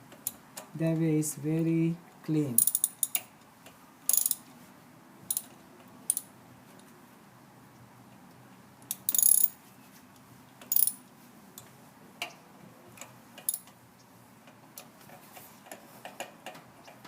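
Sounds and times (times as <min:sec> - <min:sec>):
ratchet wrench ratcheting: 0:02.6 - 0:03.2, 0:04.1 - 0:04.4, 0:05.3 - 0:05.5, 0:06.1 - 0:06.3, 0:09.0 - 0:09.6, 0:10.7 - 0:11.0.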